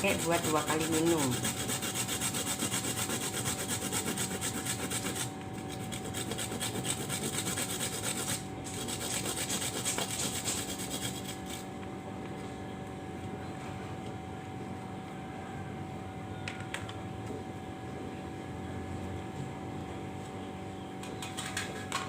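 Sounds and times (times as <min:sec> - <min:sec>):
ginger rubbed on a hand grater: 0:00.0 - 0:11.7.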